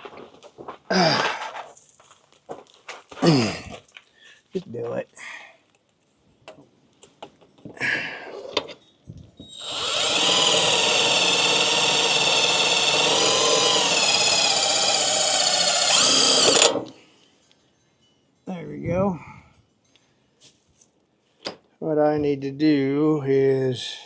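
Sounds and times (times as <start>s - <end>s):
electric drill whining: 9.4s - 17.0s.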